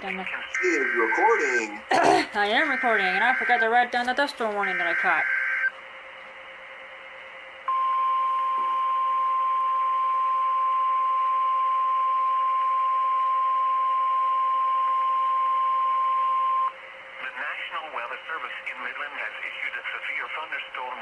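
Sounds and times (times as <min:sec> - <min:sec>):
radio hiss: 0:00.0 - 0:05.7, 0:17.2 - 0:21.0
steady high alarm tone: 0:00.6 - 0:05.7, 0:07.7 - 0:16.7.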